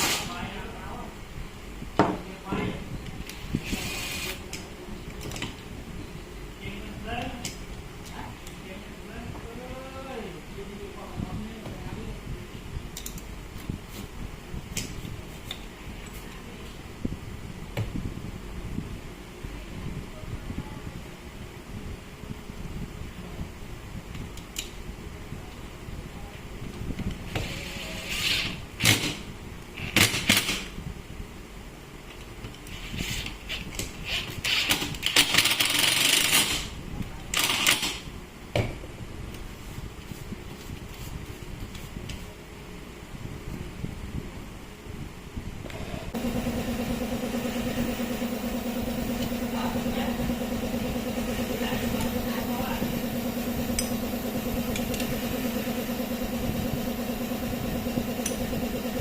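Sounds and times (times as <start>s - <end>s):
low steady hum: 46.1s - 59.0s.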